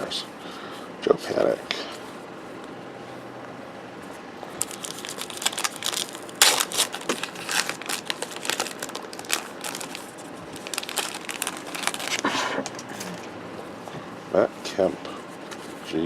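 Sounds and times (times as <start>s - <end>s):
cards rustling: 4.0s - 13.3s
foil wrapper crinkling and tearing: 4.6s - 12.8s.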